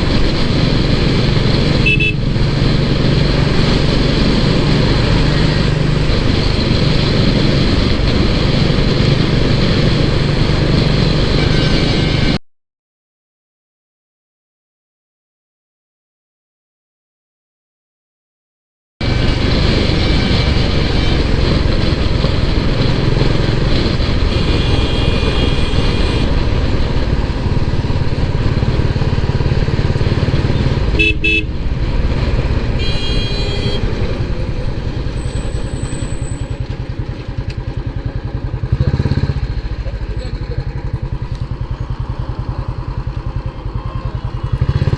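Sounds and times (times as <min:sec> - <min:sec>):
vehicle horns: 0:01.8 - 0:02.2, 0:11.2 - 0:12.4, 0:19.0 - 0:22.4, 0:23.2 - 0:27.2, 0:30.3 - 0:31.6, 0:32.6 - 0:36.7
motorcycle engine thumping: 0:36.6 - 0:44.9.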